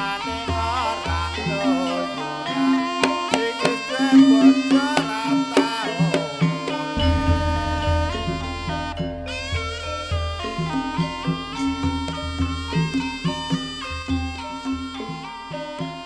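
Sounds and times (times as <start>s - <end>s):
gamelan melody: 0.0s - 16.0s
hand-drum strokes: 2.6s - 16.0s
sustained low tones: 7.0s - 15.2s.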